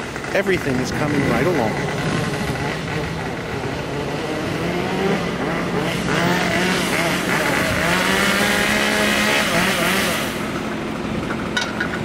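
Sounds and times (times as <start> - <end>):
motor engine running: 0.0 - 12.0.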